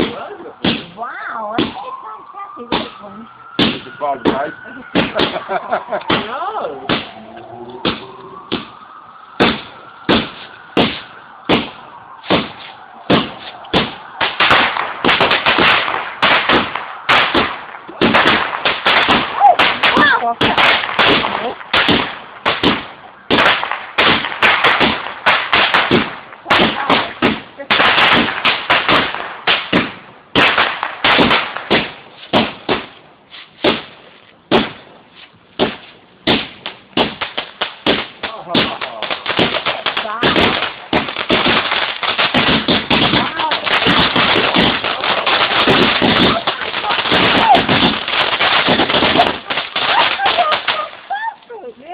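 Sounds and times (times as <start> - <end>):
crackling firework barrage: 0.0 - 51.9
fireworks bangs: 0.0 - 51.9.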